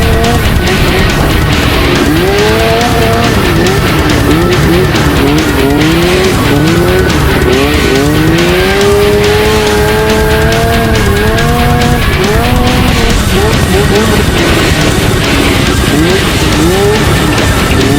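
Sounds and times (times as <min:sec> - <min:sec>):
buggy engine revving: 0:00.0 - 0:17.9
loud background music: 0:00.0 - 0:17.9.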